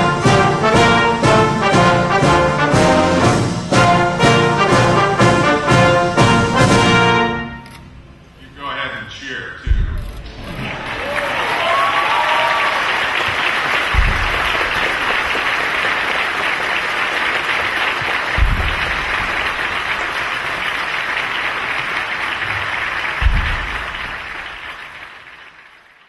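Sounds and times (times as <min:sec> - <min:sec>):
low thumps: 0:09.6 - 0:11.2, 0:13.2 - 0:16.4, 0:18.0 - 0:21.3, 0:22.4 - 0:25.0
crowd applauding: 0:10.3 - 0:26.0.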